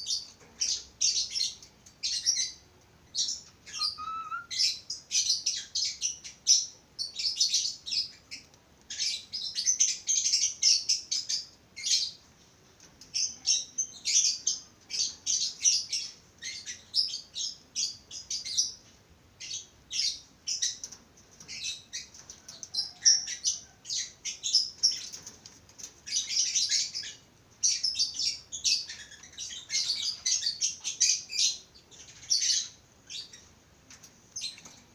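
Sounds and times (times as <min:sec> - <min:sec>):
budgerigars chattering and chirping: 0:03.2 - 0:12.1.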